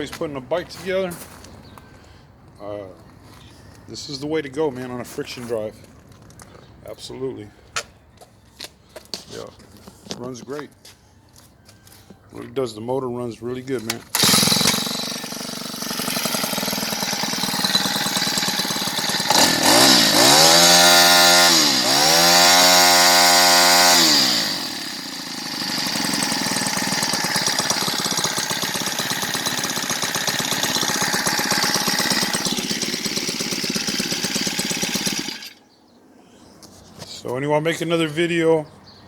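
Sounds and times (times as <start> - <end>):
small engine revving and idling: 14.1 - 35.6.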